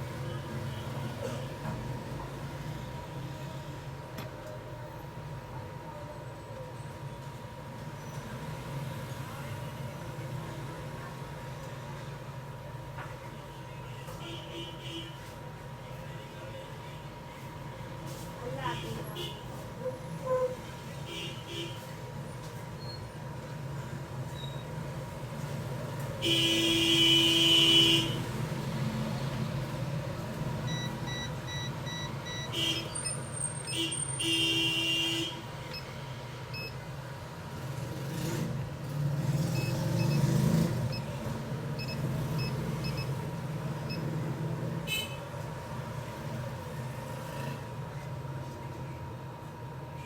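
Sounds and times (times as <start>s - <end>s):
background traffic: 0.0s - 50.0s
vehicle horn honking: 32.5s - 33.0s, 44.9s - 45.2s.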